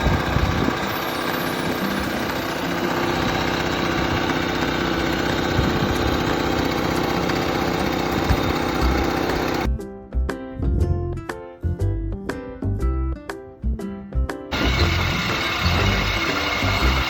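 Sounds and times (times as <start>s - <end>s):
wind buffeting microphone: 0.0s - 0.9s, 5.4s - 6.2s
small engine running: 0.0s - 9.7s, 14.5s - 17.0s.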